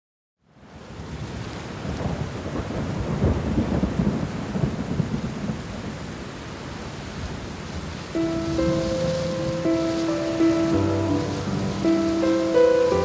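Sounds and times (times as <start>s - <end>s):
steady rain: 0.4s - 13.0s
thunder rumbling: 8.2s - 13.0s.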